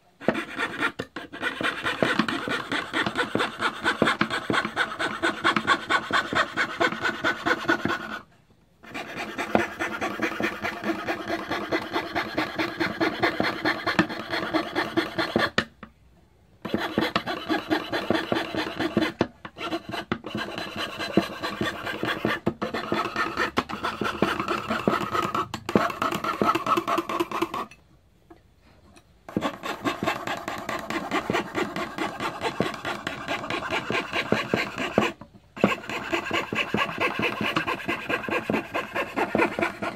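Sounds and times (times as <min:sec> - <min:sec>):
fretsaw cutting wood: 0:29.4 - 0:39.9.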